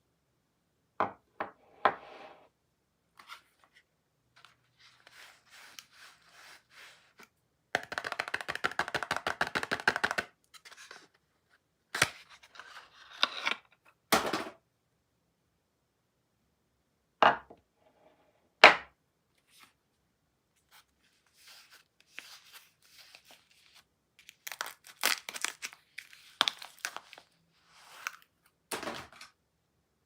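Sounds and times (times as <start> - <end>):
wrapping rustling and tearing: 20.7 - 28.3.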